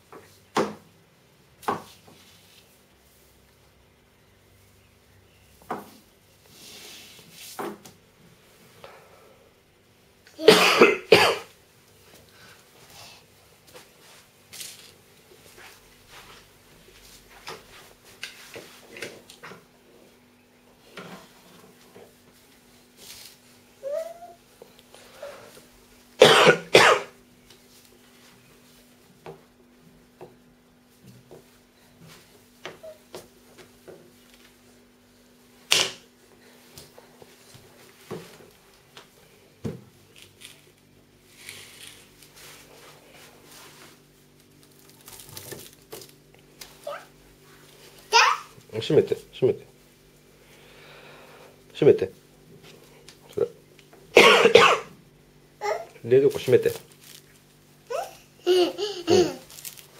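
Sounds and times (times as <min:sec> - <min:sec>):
person coughing: 0:10.4 - 0:11.5, 0:26.2 - 0:27.1, 0:54.2 - 0:54.9.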